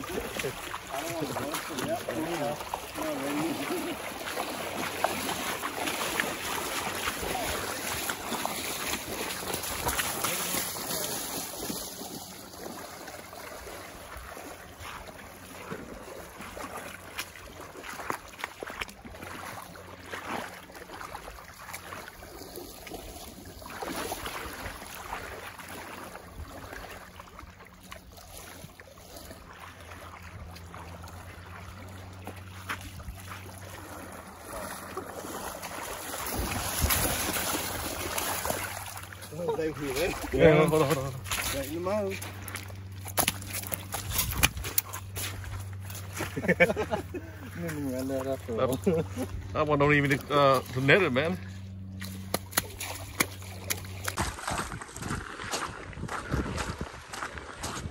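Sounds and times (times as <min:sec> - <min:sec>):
moving water: 0:00.0 - 0:57.9
wind buffeting microphone: 0:54.2 - 0:57.9.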